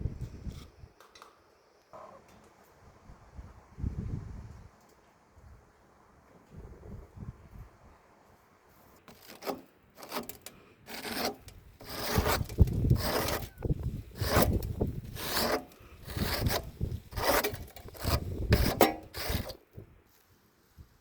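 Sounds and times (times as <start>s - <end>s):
hand tool rasping on wood: 9.1s - 19.6s.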